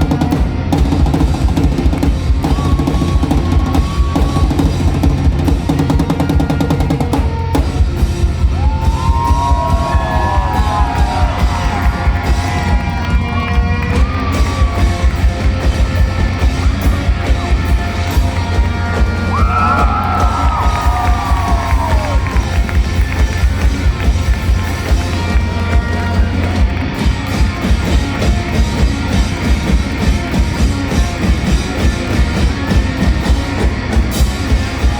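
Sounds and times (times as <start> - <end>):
rock drum solo: 0.0 - 34.9.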